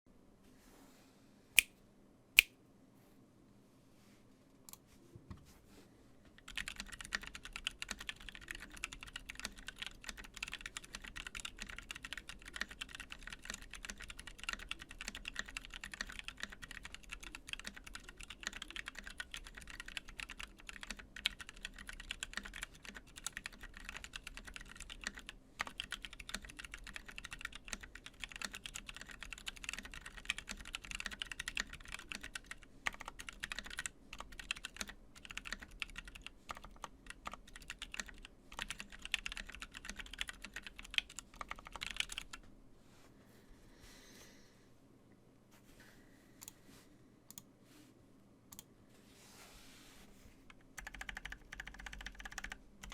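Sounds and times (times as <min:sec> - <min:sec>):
fast mechanical keyboard typing: 0:06.4 - 0:42.4, 0:50.7 - 0:52.9.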